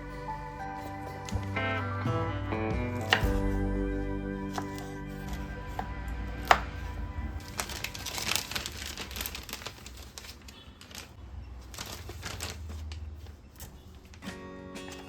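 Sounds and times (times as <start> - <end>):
background music: 0.0 - 8.8
plastic crinkling: 4.5 - 15.0.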